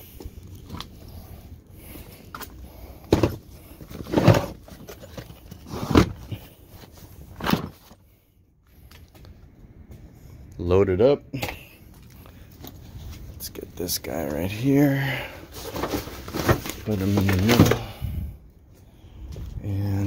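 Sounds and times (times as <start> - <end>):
plastic tool cases thudding: 2.3 - 8.0, 15.5 - 18.0.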